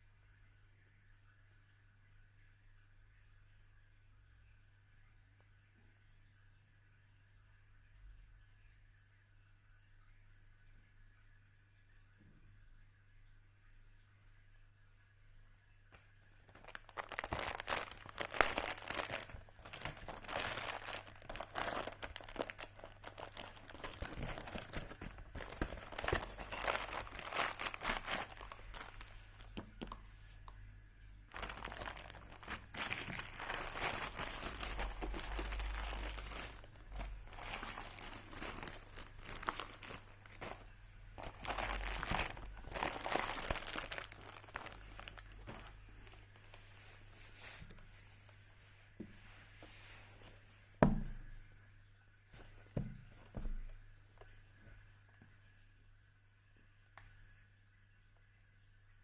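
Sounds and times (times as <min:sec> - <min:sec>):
packaging crinkling: 0:16.4 - 0:30.0, 0:31.3 - 0:47.6.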